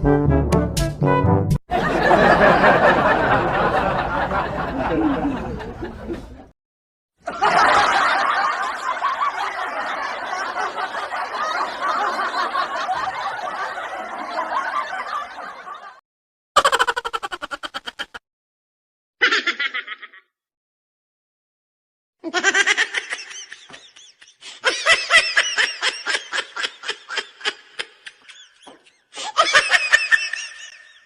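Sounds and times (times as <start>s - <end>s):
laughing sound effects: 1.8s - 6.5s, 16.6s - 18.2s, 19.2s - 20.3s, 22.2s - 31.0s.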